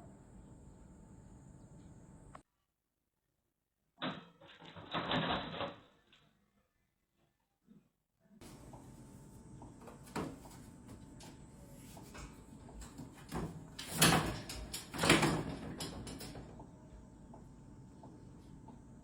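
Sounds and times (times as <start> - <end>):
faint steady hum: 0.0 - 2.4
knocks and clatters: 4.0 - 6.2.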